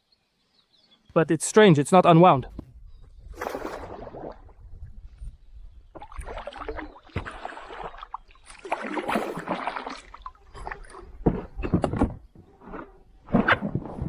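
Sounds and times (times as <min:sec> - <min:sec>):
water splashing and sloshing: 0:03.3 - 0:14.0.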